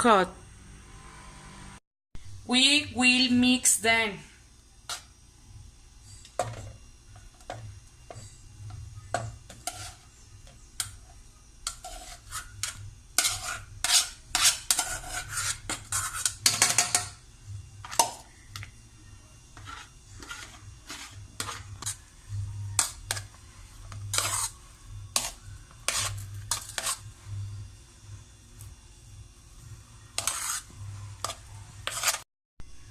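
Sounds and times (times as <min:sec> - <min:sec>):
utensil clinking and scraping bowl: 0:09.1 - 0:17.2, 0:19.5 - 0:27.3, 0:30.0 - 0:32.2.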